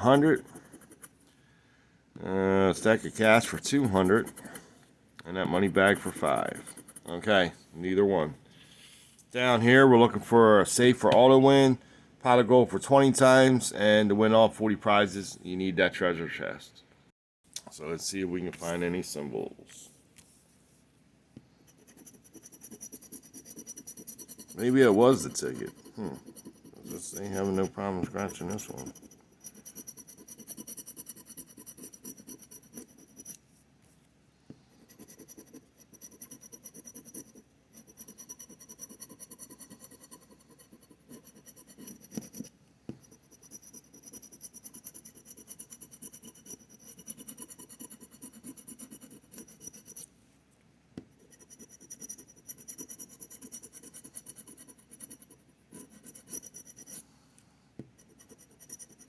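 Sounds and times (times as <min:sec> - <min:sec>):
lottery ticket being scratched: 0:00.0 - 0:01.2, 0:02.7 - 0:04.7, 0:05.5 - 0:07.2, 0:21.8 - 0:33.4, 0:34.9 - 0:42.4, 0:43.2 - 0:50.1, 0:51.3 - 0:57.0.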